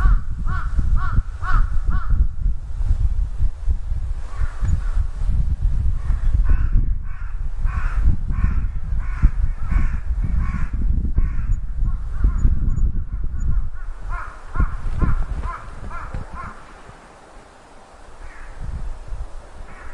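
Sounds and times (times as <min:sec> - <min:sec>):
steady low rumble: 0:00.0 - 0:19.5
distant crows cawing: 0:06.0 - 0:12.5, 0:13.5 - 0:17.2, 0:18.1 - 0:18.7, 0:19.6 - 0:19.9.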